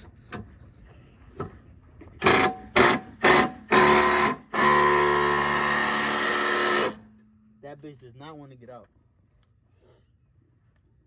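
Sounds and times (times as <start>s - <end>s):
power tool motor whine: 2.2s - 7.0s.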